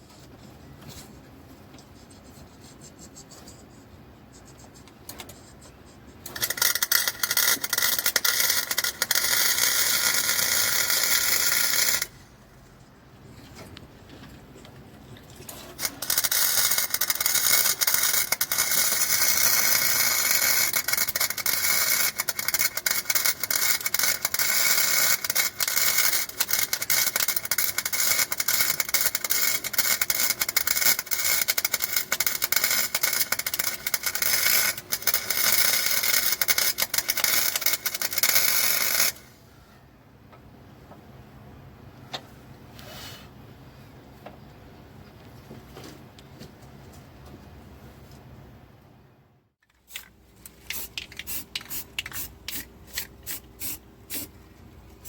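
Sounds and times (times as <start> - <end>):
welding arc crackling: 6.3 - 12.2, 15.8 - 39.2.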